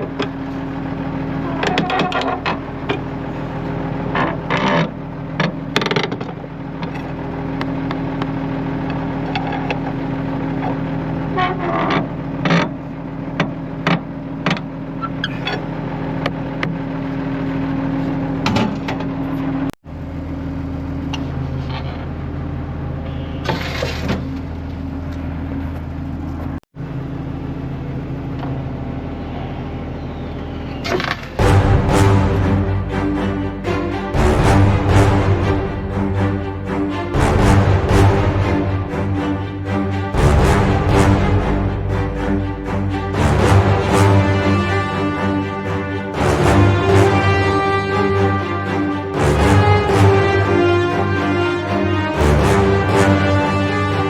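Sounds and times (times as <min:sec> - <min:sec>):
engine running: 0:31.4 - 0:54.0.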